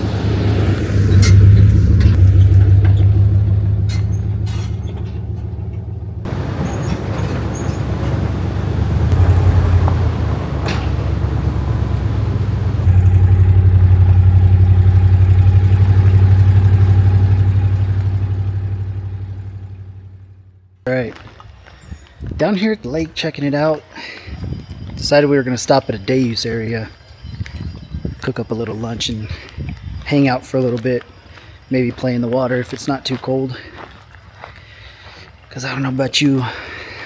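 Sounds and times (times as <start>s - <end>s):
truck engine droning: 0.0s - 20.6s
knocks and rattles: 2.8s - 18.8s.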